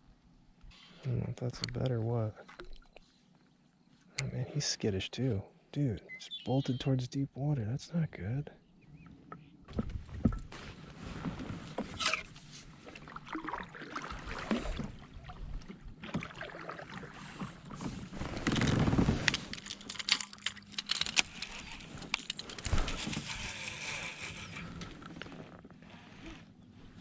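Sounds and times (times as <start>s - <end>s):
gear knocking and rattling: 18.0s - 24.0s.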